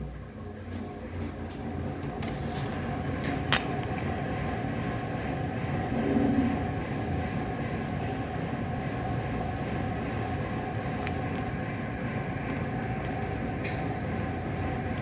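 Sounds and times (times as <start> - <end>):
faint hum: 0.0 - 15.0
low rumble: 3.8 - 9.0.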